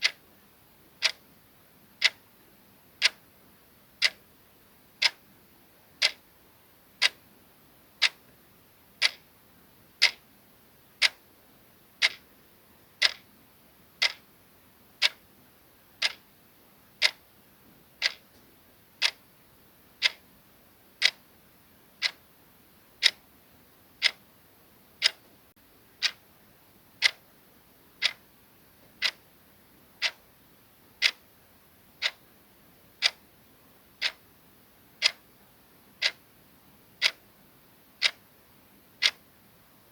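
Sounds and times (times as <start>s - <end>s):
clock ticking: 0.0s - 0.2s, 1.0s - 1.2s, 2.0s - 2.3s, 3.0s - 3.2s, 4.0s - 4.2s, 5.0s - 5.2s, 6.0s - 6.3s, 7.0s - 7.2s, 8.0s - 8.2s, 9.0s - 9.3s, 10.0s - 10.2s, 11.0s - 11.2s, 12.0s - 12.2s, 13.0s - 13.3s, 14.0s - 14.3s, 15.0s - 15.2s, 16.0s - 16.2s, 17.0s - 17.2s, 18.0s - 18.4s, 19.0s - 19.2s, 20.0s - 20.2s, 21.0s - 21.2s, 22.0s - 22.2s, 23.0s - 23.2s, 24.0s - 24.2s, 25.0s - 25.3s, 26.0s - 26.2s, 27.0s - 27.3s, 28.0s - 28.2s, 29.0s - 29.2s, 30.0s - 30.2s, 31.0s - 31.2s, 32.0s - 32.2s, 33.0s - 33.2s, 34.0s - 34.2s, 35.0s - 35.3s, 36.0s - 36.2s, 37.0s - 37.2s, 38.0s - 38.2s, 39.0s - 39.2s.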